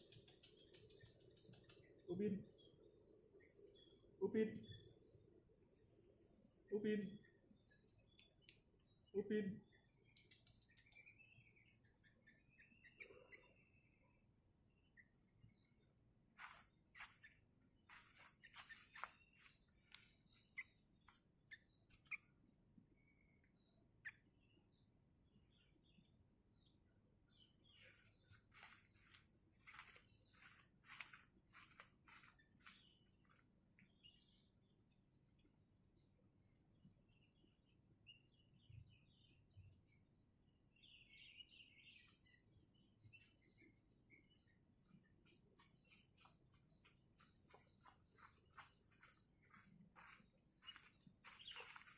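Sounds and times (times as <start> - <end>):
bird chirping and chattering: 0.0 - 2.8, 6.6 - 14.2, 16.4 - 22.3, 43.0 - 51.9.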